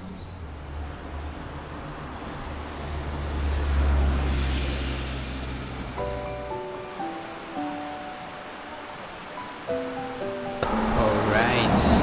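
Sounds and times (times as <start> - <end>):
vehicle rumbling through tunnel: 0.0 - 6.4, 10.6 - 12.0
music: 6.0 - 12.0.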